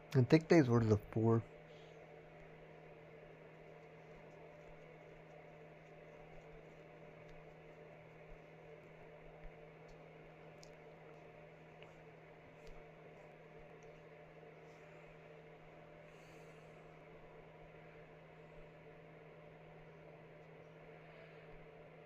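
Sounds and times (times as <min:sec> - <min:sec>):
low electrical hum: 0:00.0 - 0:22.0
faint clicks: 0:03.7 - 0:14.0.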